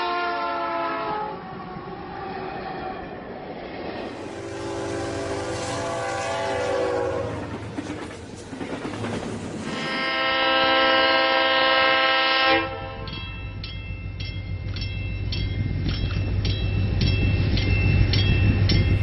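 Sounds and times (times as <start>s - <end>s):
locomotive air horn: 0.0s - 1.5s, 4.1s - 7.6s, 9.7s - 13.1s
locomotive engine rumbling: 3.2s - 19.0s
bell ringing steadily: 13.0s - 19.0s.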